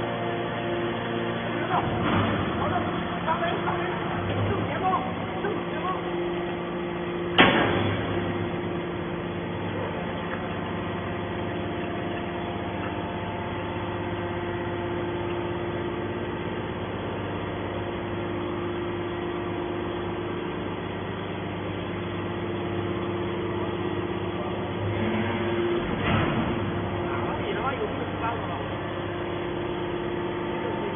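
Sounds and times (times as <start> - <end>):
baler machine hum: 0.0 - 30.9
loud metal clank: 7.3 - 8.3.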